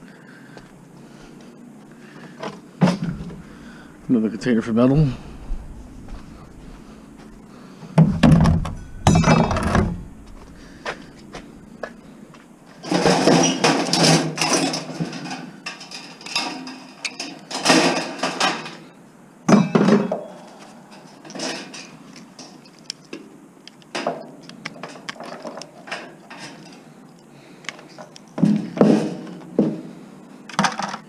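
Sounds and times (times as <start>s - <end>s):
scrap metal clattering into bin: 8.3s - 10.1s, 12.8s - 18.9s, 21.3s - 22.0s.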